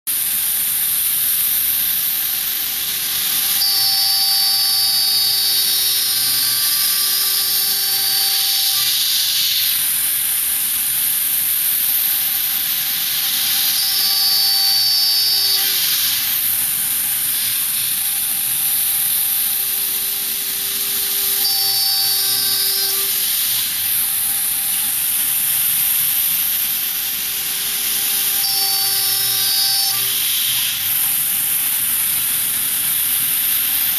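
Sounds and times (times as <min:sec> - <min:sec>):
cnc router hissing: 0:00.3 - 0:33.9
thin high whining tones: 0:03.6 - 0:09.6, 0:13.4 - 0:16.8, 0:19.1 - 0:24.8, 0:27.0 - 0:30.8.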